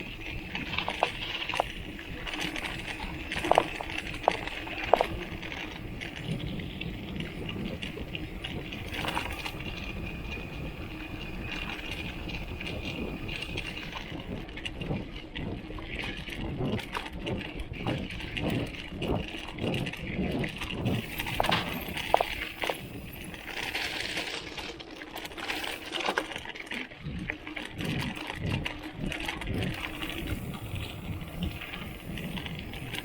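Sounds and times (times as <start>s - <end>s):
bike riding hiss: 0.0s - 14.3s, 20.8s - 24.7s, 29.6s - 33.0s.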